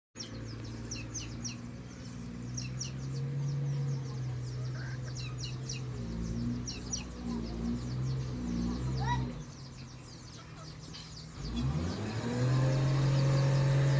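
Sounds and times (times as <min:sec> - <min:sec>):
small birds chirping: 0:00.2 - 0:13.9
heavy machinery engine running: 0:00.3 - 0:13.9.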